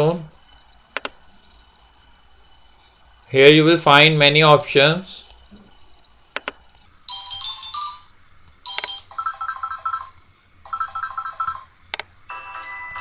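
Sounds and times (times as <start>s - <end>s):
touch screen clicks: 0.9s - 1.2s, 6.3s - 8.0s, 8.6s - 12.1s
electronic ringtone melodies: 7.1s - 8.1s, 8.7s - 11.7s, 12.3s - 13.0s.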